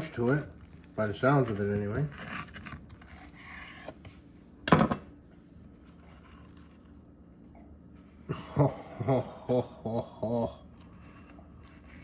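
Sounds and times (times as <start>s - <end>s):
knife crunching through toasted bread: 0.0s - 4.0s, 10.8s - 12.0s.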